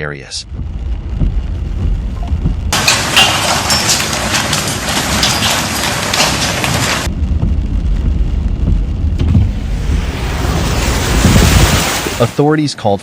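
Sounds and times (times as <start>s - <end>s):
deep muffled rushing noise: 0.2s - 2.9s, 6.6s - 12.4s
heavy rain hissing: 0.4s - 12.6s.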